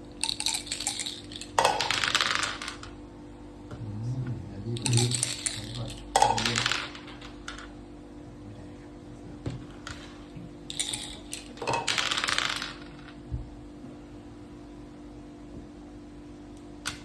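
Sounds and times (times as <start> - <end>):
dice rattling: 0.2 - 3.0, 4.8 - 7.7, 10.7 - 13.2
game pieces clicking on board: 0.2 - 3.0, 4.8 - 7.7, 10.7 - 13.2.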